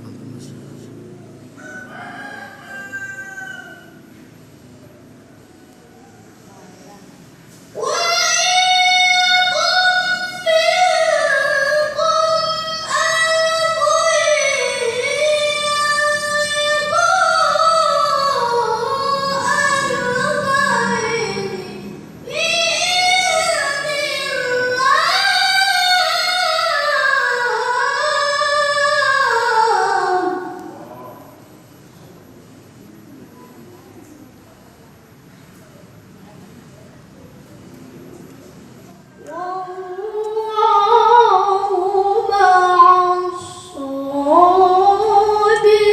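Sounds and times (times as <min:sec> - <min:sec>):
boy reciting melodically: 0:07.6 - 0:31.4, 0:39.0 - 0:45.9.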